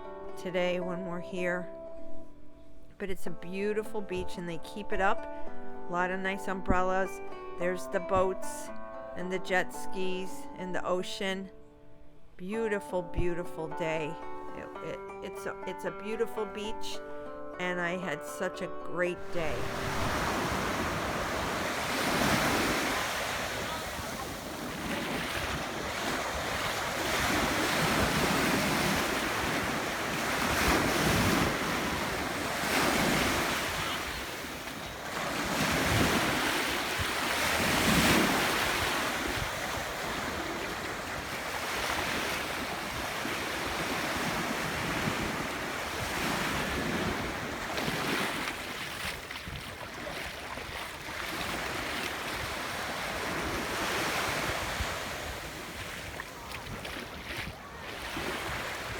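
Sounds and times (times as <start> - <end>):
ocean surf breaking on a beach: 19.3 - 58.9
wind buffeting the microphone: 19.6 - 48.3, 48.9 - 58.9.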